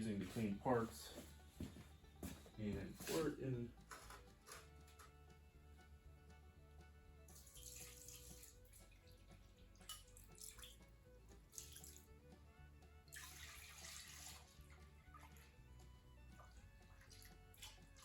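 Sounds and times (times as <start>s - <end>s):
quiet background music: 0.0s - 18.0s
faint liquid splashing: 7.3s - 10.8s, 13.1s - 15.5s.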